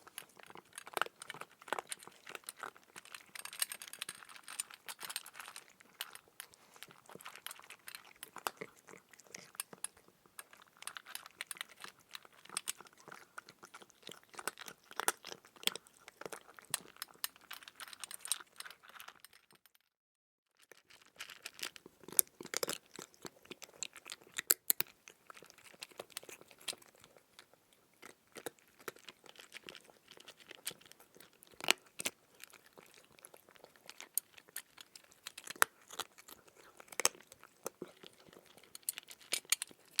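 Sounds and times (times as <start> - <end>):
crunchy chewing: 0.0 - 19.3, 20.7 - 40.0.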